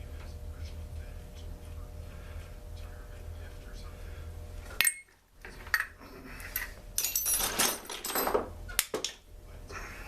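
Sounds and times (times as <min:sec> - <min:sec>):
metal parts clinking on worktable: 0:04.8 - 0:09.2.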